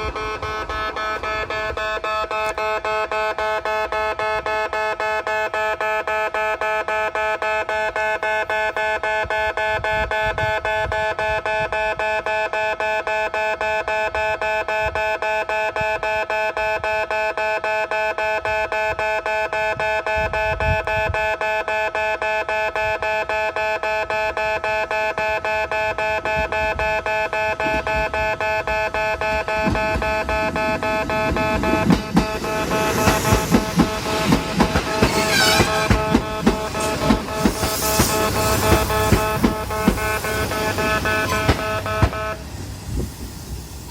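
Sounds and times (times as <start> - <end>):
train rumble: 0.0 - 5.8, 24.4 - 43.9
level crossing alarm dings: 0.0 - 42.5.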